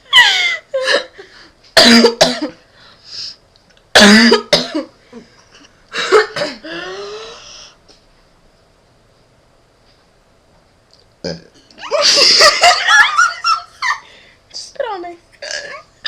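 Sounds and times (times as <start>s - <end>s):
person hiccuping: 15.4s - 15.9s.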